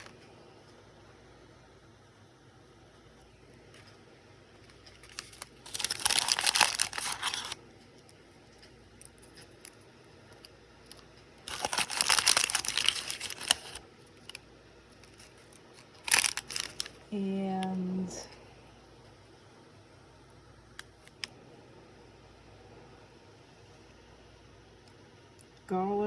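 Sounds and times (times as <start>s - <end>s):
packaging crinkling: 0.0s - 0.3s, 3.3s - 17.1s.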